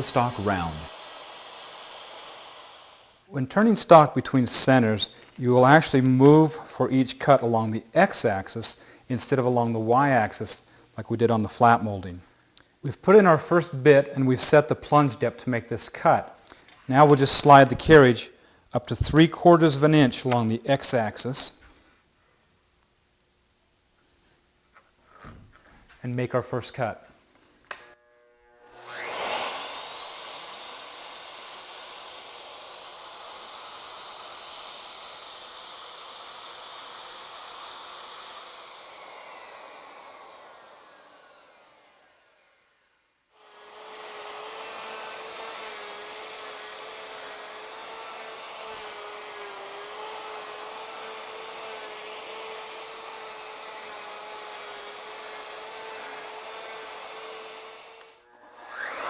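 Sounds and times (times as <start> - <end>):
router cutting wood: 0.0 - 6.4, 27.7 - 59.0.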